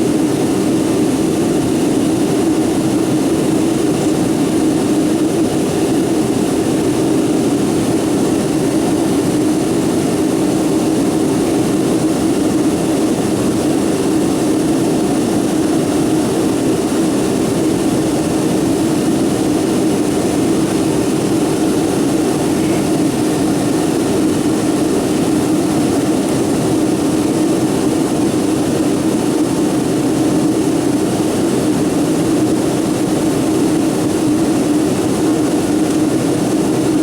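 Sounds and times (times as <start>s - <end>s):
jet engine cabin roar: 0.0s - 37.0s
constant low hum: 15.3s - 28.9s.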